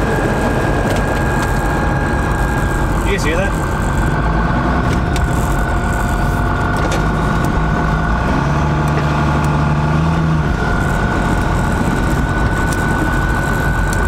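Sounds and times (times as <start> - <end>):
high whistling howling tone: 0.0 - 8.2
diesel truck engine drone: 0.0 - 14.0.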